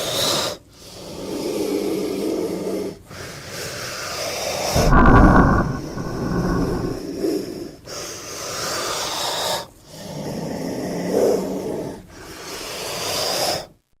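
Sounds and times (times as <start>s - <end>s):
low rumble: 4.8s - 7.1s.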